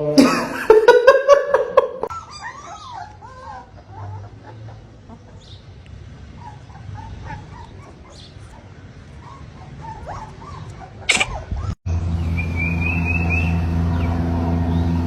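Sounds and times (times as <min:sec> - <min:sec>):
dog whimpering: 0:02.1 - 0:05.5, 0:06.3 - 0:11.8
dog barking: 0:06.4 - 0:11.8.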